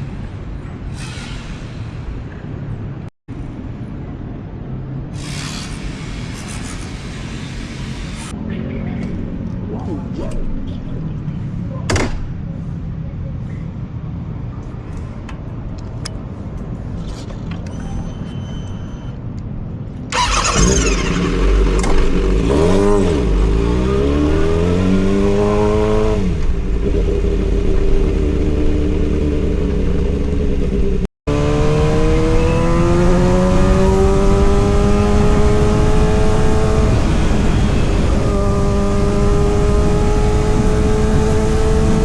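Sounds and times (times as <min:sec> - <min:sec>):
motorcycle engine revving: 0:20.1 - 0:42.0.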